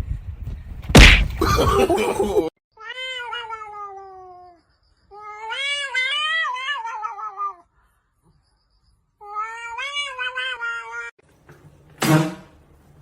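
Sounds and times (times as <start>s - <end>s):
cat meowing: 2.8s - 7.7s, 9.2s - 11.1s.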